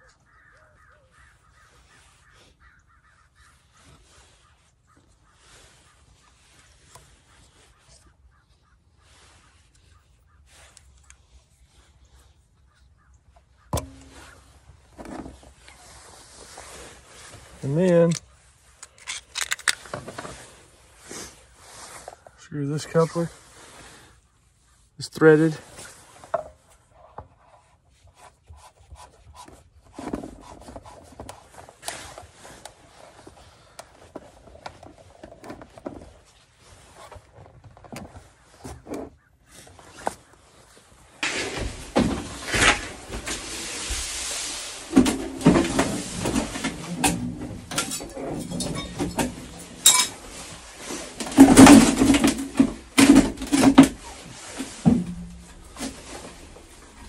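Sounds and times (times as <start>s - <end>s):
rustling knocking and clattering: 13.8s - 15.6s, 41.2s - 57.0s.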